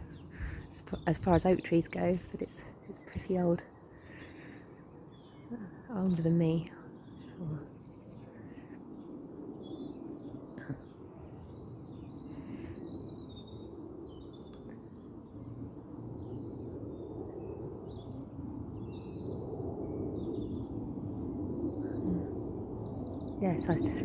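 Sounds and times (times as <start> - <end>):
distant traffic rumble: 0.0 - 19.2, 19.8 - 24.0
songbirds chirping and trilling: 0.0 - 24.0.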